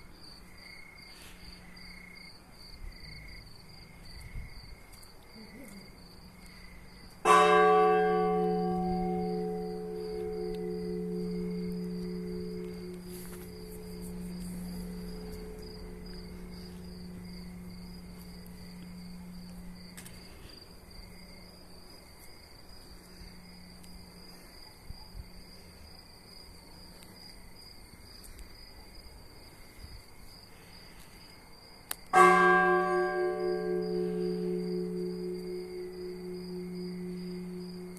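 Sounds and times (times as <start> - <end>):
insects chirring: 0.0 - 37.9
large bell ringing: 7.2 - 20.2, 32.1 - 37.9.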